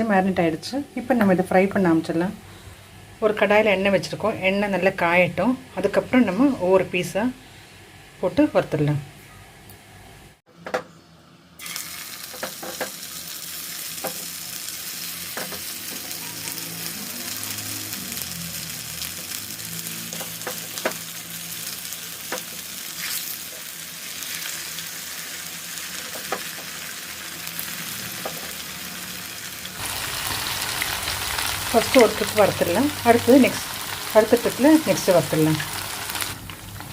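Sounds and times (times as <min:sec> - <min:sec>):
chicken sizzling in hot oil: 0:11.6 - 0:36.9.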